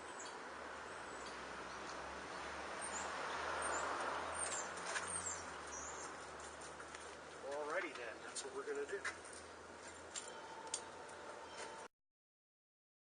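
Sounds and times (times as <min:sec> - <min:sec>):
small birds chirping: 0:00.0 - 0:09.5.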